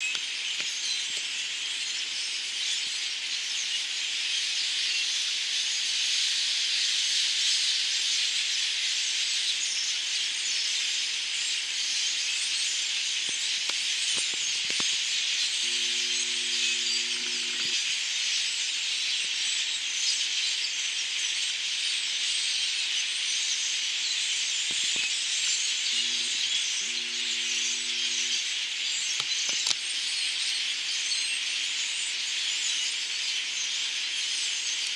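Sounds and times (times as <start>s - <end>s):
flock of birds chattering: 11.6s - 34.9s
low steady tone: 15.7s - 17.8s, 26.0s - 28.4s.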